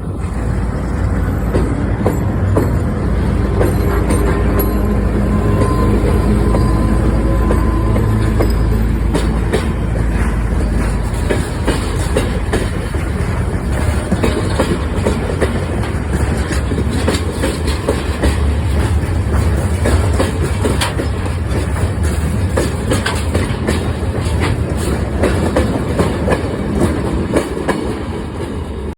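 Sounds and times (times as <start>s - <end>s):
diesel locomotive engine rumbling: 0.0s - 28.9s
wheels clattering over rail joints: 0.0s - 28.9s
steady engine tone: 3.0s - 11.1s.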